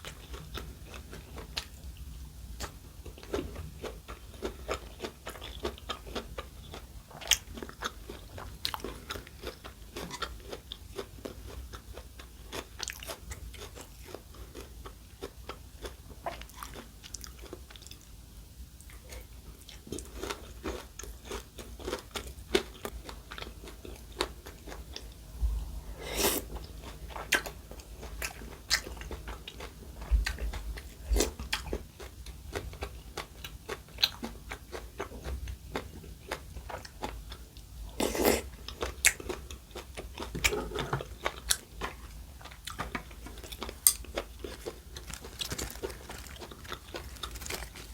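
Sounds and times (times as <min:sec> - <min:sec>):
chewing and crunching food: 0:00.0 - 0:47.9.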